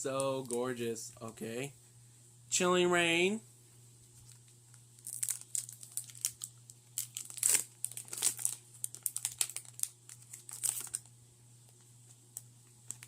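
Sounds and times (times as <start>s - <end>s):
foil wrapper crinkling and tearing: 4.2s - 11.1s.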